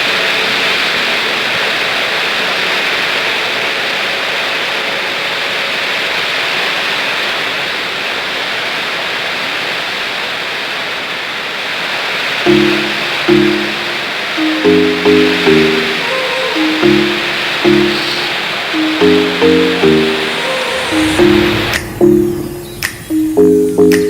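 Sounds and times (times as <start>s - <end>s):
steady rushing noise: 12.5s - 24.0s.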